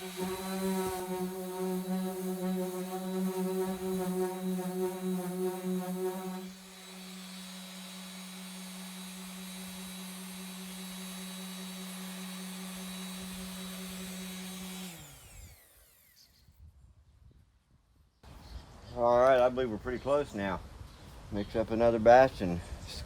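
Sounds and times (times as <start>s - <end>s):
electric sander humming: 0.0s - 16.1s.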